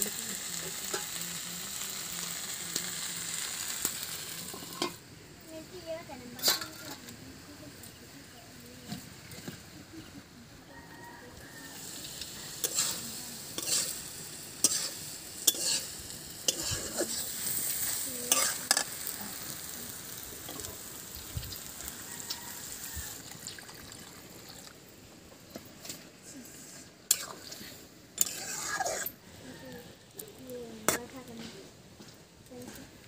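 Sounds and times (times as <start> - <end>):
vegetables sizzling in oiled pan: 0.0 - 33.0
spatula scraping and knocking pan: 26.6 - 29.2.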